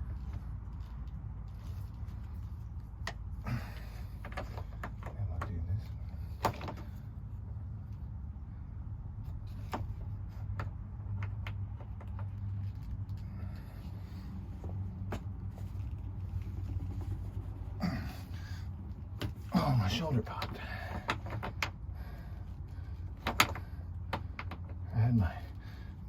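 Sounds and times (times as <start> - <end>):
steady low hum: 0.0 - 26.0
clicks and knocks of pipe fittings: 3.0 - 7.0, 9.5 - 13.6, 19.1 - 24.9.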